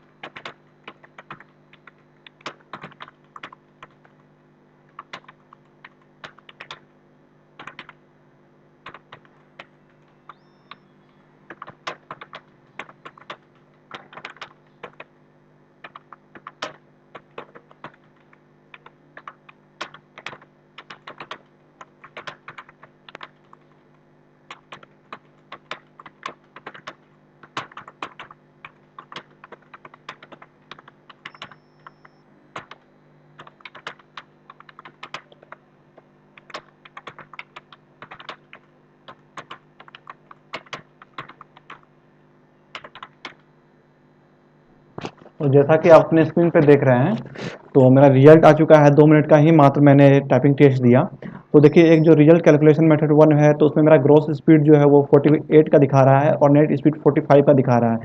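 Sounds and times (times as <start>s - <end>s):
low steady hum: 0.0s - 58.0s
keyboard keystroke clicks: 8.8s - 15.1s, 15.8s - 23.6s, 24.5s - 32.8s, 33.4s - 35.6s, 36.4s - 41.9s, 42.7s - 43.4s.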